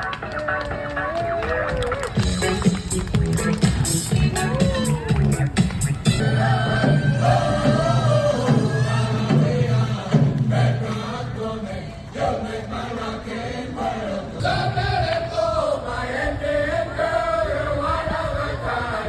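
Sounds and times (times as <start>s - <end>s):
group of voices chanting: 6.0s - 19.0s.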